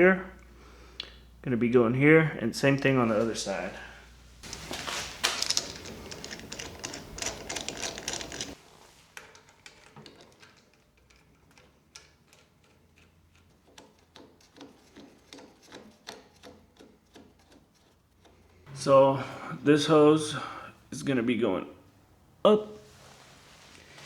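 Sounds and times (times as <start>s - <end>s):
metal fittings clattering: 4.4s - 8.6s, 9.2s - 18.5s.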